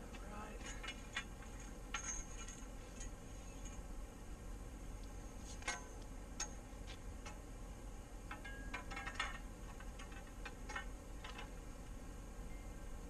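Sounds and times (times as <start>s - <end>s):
metal conduit clicking and clinking: 0.5s - 3.8s, 5.6s - 7.5s, 8.3s - 11.7s.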